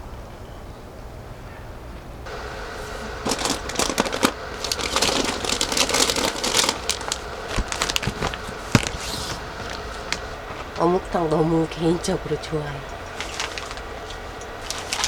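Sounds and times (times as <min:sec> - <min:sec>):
plastic packaging crinkling: 0:02.3 - 0:10.9, 0:13.0 - 0:15.0.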